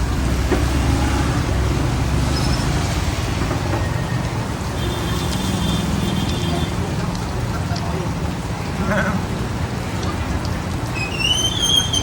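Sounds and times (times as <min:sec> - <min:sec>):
heavy rain hiss: 0:00.0 - 0:12.0
road traffic: 0:00.0 - 0:12.0.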